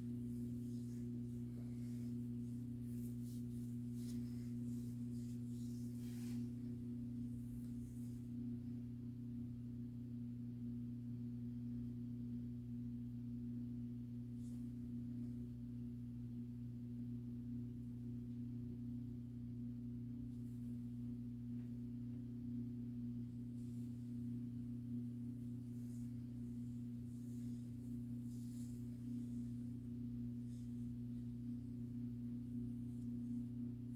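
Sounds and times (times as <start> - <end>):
soft rustles: 0.0 - 8.5, 23.2 - 33.9.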